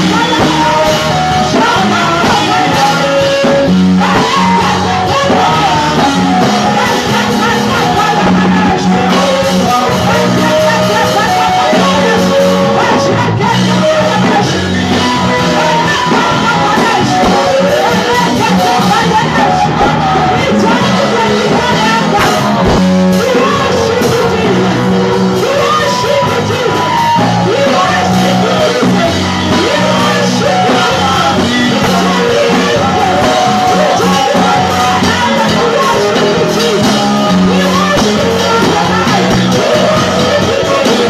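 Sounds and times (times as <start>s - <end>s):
live band with singing: 0.0s - 41.0s.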